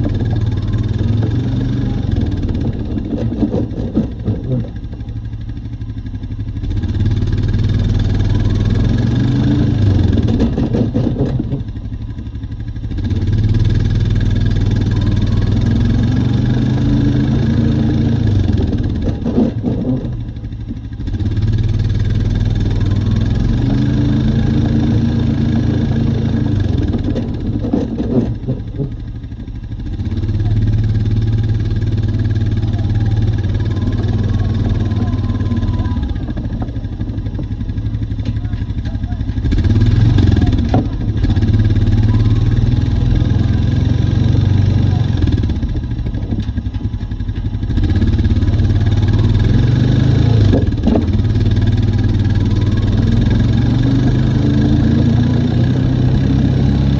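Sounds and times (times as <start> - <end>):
atv engine revving: 0.0 - 56.9.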